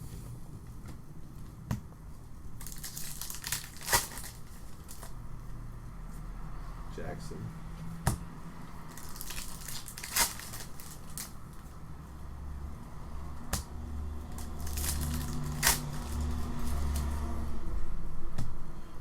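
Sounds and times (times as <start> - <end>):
wrappers crinkling and tearing: 2.6 - 5.2, 8.9 - 11.7, 14.2 - 17.3.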